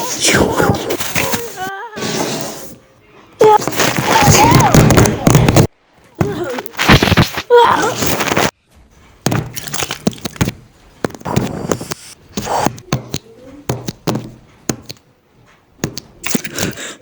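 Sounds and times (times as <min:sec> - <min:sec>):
cracking and breaking clicks: 0:03.6 - 0:08.6, 0:09.2 - 0:12.1.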